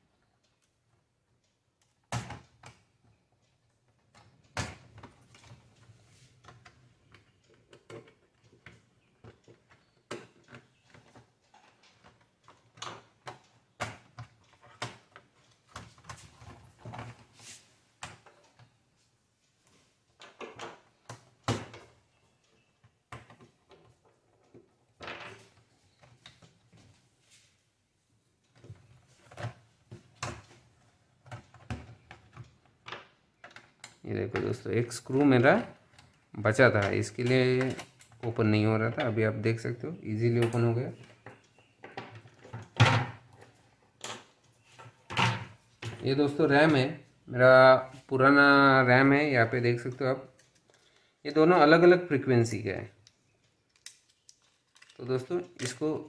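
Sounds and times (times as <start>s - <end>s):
plastic and tool clicks and knocks: 1.8s - 17.3s, 20.2s - 26.9s, 28.4s - 34.6s, 53.0s - 55.9s.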